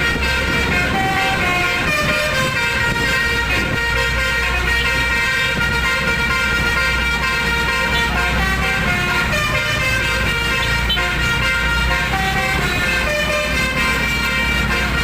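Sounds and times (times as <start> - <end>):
multi-tone horn playing melody: 0.0 - 15.0.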